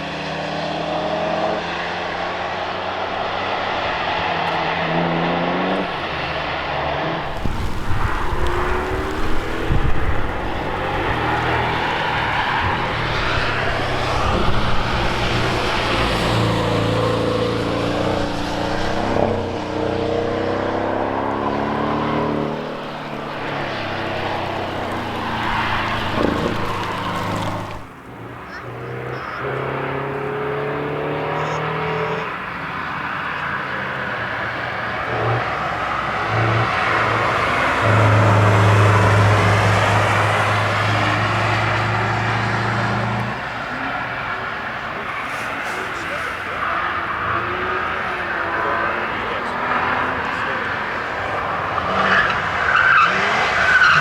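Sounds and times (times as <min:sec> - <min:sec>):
car engines revving past: 0:00.0 - 0:54.0
hiss of tyres and air: 0:45.1 - 0:46.6.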